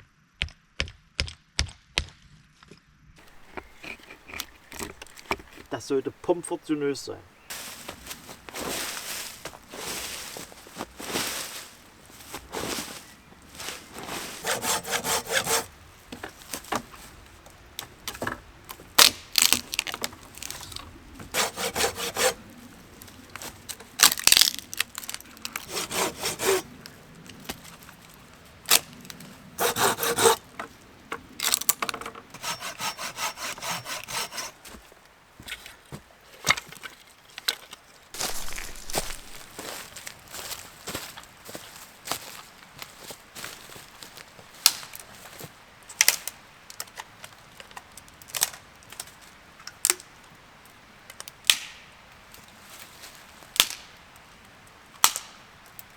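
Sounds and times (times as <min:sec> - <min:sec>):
wood rasping strokes: 0:03.2 - 0:06.4, 0:07.5 - 0:28.1, 0:29.6 - 0:30.8, 0:31.4 - 0:34.9, 0:38.2 - 0:39.7
sharp cracks and knocks: 0:13.6 - 0:21.7, 0:23.3 - 0:26.4, 0:28.7 - 0:32.2, 0:38.2 - 0:39.8, 0:44.6 - 0:45.0, 0:51.1 - 0:51.9, 0:53.6 - 0:54.0, 0:55.0 - 0:55.5.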